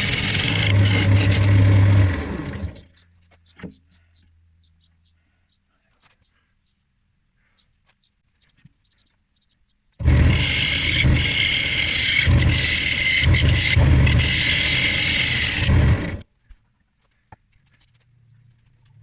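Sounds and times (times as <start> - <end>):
power tool running: 0.0 - 2.9, 10.0 - 16.2.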